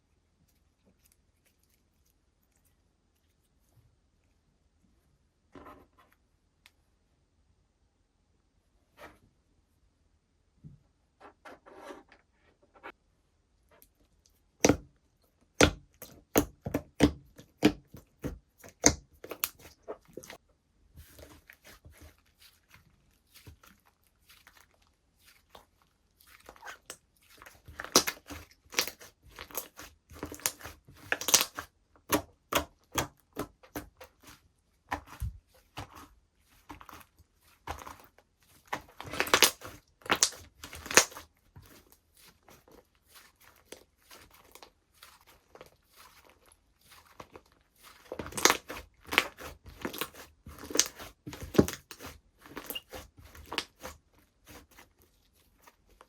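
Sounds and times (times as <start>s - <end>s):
slime clicking and crackling: 23.2s - 42.8s, 43.4s - 54.9s.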